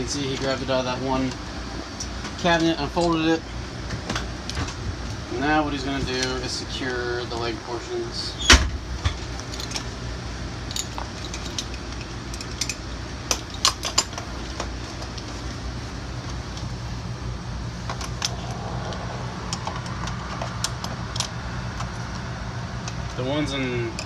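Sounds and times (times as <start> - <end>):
steady low hum: 0.0 - 24.0
buckles clicking and clinking: 8.4 - 24.0.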